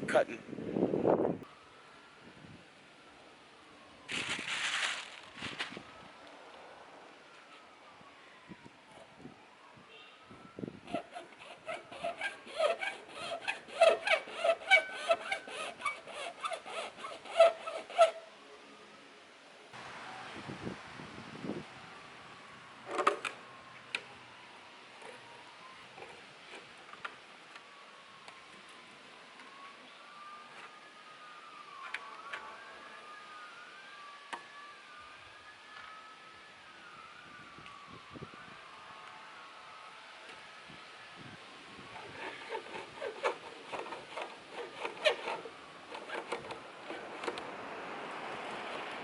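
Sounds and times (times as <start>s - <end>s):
emergency vehicle siren wailing: 1.2s - 15.8s, 19.7s - 49.0s
hacksaw cutting plastic: 10.9s - 18.2s, 42.0s - 47.4s.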